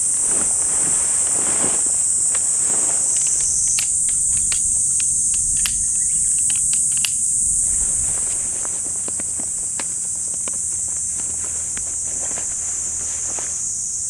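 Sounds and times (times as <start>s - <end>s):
insect chorus drone: 0.0s - 14.0s
light clicks and taps: 3.1s - 7.3s.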